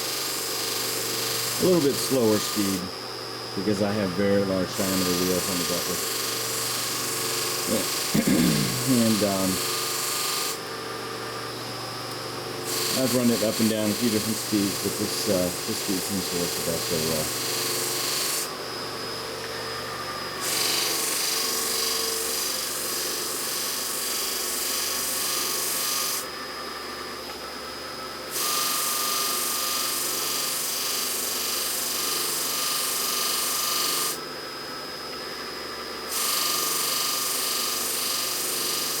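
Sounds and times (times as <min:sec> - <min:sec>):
rough buffing hiss: 0:07.6 - 0:09.7.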